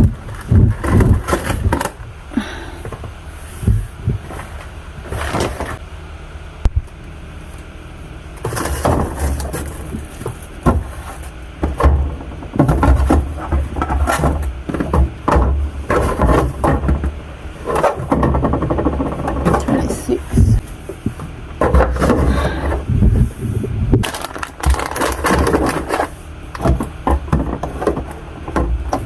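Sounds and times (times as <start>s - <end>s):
items knocking on fridge shelves: 0.0s - 2.0s, 8.4s - 23.3s, 23.9s - 29.0s
packages rustling: 24.0s - 27.0s.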